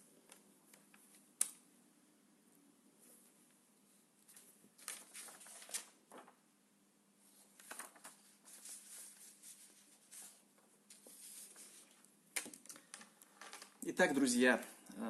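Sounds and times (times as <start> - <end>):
faint rustles and clicks: 7.3 - 13.8.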